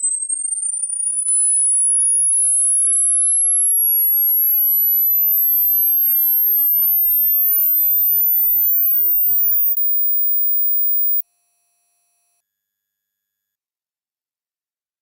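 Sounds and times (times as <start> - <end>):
rising high electronic tone: 8.6 - 11.2.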